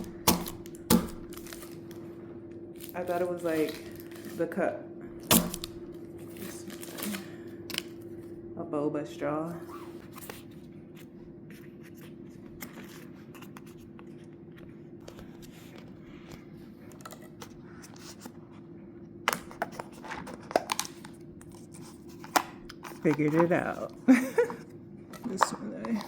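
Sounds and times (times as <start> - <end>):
steady hum: 0.0 - 26.0
plastic cup and straw rustling: 2.8 - 4.5, 19.6 - 24.6.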